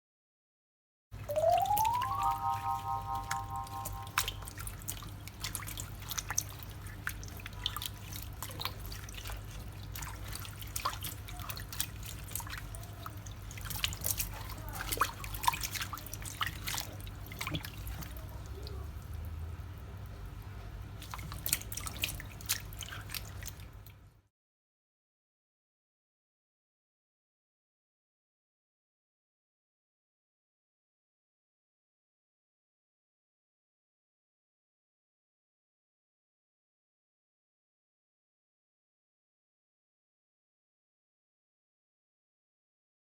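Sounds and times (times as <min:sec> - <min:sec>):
low steady hum: 0:01.3 - 0:05.1.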